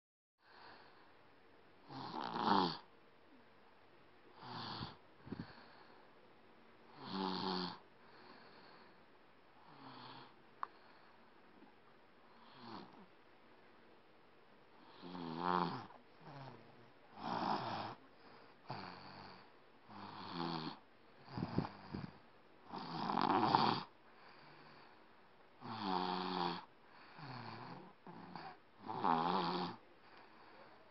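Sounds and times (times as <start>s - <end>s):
child snoring: 1.8s - 2.9s, 4.4s - 5.8s, 6.9s - 7.8s, 9.6s - 10.4s, 12.4s - 13.0s, 14.8s - 18.0s, 18.6s - 24.9s, 25.6s - 29.8s.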